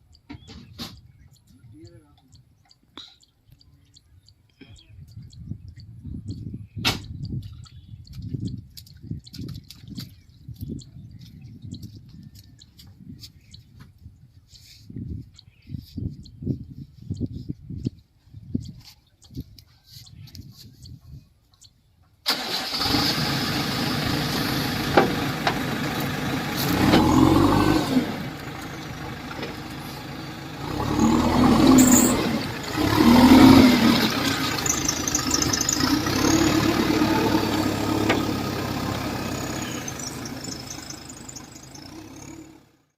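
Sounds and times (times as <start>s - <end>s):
diesel engine revving: 22.3s - 42.9s.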